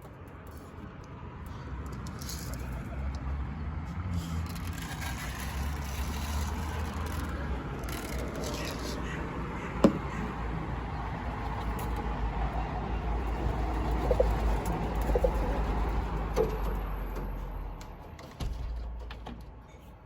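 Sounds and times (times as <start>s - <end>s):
pigeon cooing: 13.2s - 16.7s.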